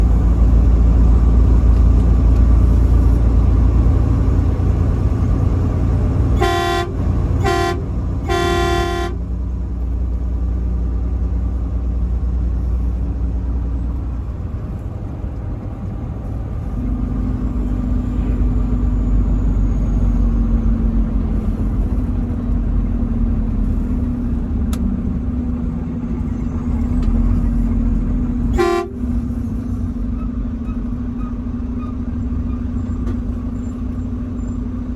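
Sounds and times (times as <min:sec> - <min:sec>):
truck engine and road noise: 0:00.0 - 0:34.9
truck horn blasts: 0:06.2 - 0:09.4, 0:28.4 - 0:29.3.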